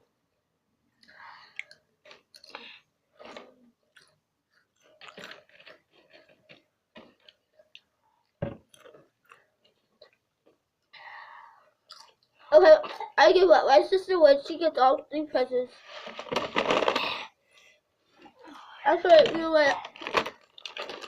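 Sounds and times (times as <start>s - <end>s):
potato chips crunching: 4.8s - 7.5s, 19.8s - 21.0s.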